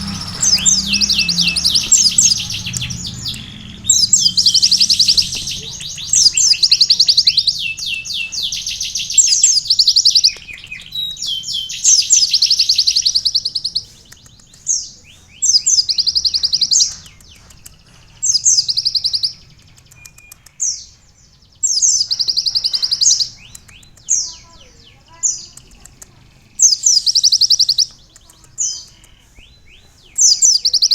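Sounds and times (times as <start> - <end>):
bird singing high trills: 0.0 - 30.9.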